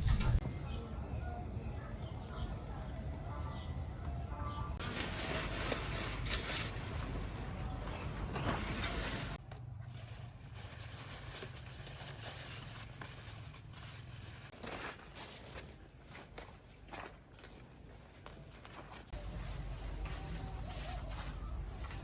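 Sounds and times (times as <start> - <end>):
crop stalks rustling and tearing: 4.8 - 7.6, 8.4 - 19.1.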